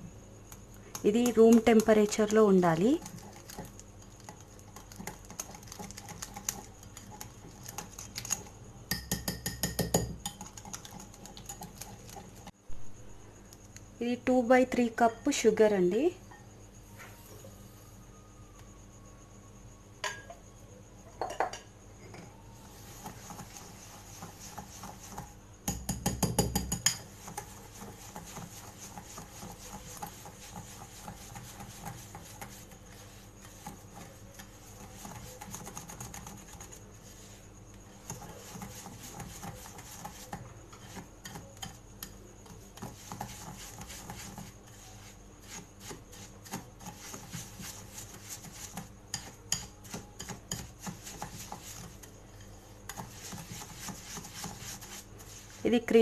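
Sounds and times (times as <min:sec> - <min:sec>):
utensil scraping and clicking in bowl: 0:00.5 - 0:12.5, 0:22.9 - 0:36.9, 0:37.8 - 0:55.6.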